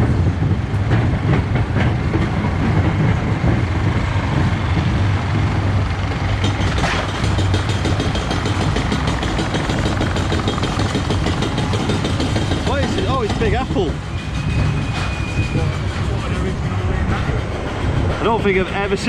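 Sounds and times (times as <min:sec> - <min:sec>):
roller coaster wheels rumbling: 0:00.0 - 0:19.0
rapid clattering clicks: 0:06.1 - 0:14.1.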